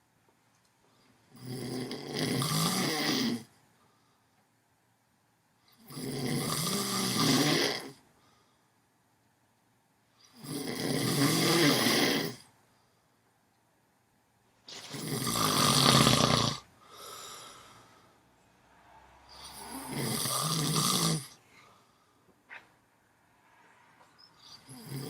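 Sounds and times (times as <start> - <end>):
person snoring: 1.3 - 3.5, 5.8 - 8.0, 10.3 - 12.5, 14.7 - 18.0, 19.2 - 21.8, 24.4 - 25.0
soft breath: 8.1 - 8.9, 16.8 - 20.2, 21.3 - 22.5.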